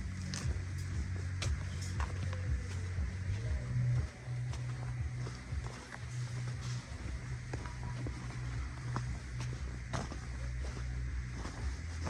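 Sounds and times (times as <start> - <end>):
background music: 0.0 - 12.0
low bass line: 0.0 - 12.0.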